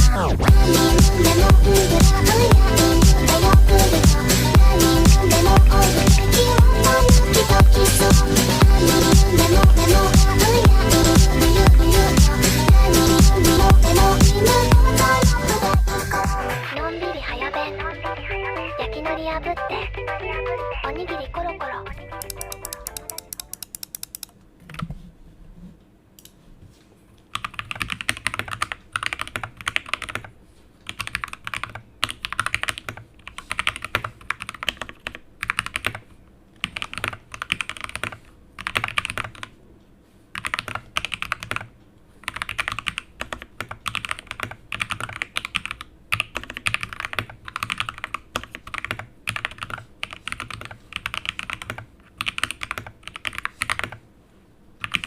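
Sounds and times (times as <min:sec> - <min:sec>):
mechanical keyboard typing: 0:22.2 - 0:24.9, 0:27.3 - 0:39.5, 0:40.4 - 0:54.0.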